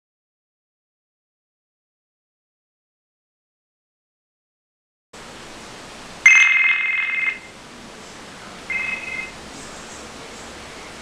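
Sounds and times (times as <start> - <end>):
telephone ringing electronic trill: 6.3 - 7.5, 8.7 - 9.4.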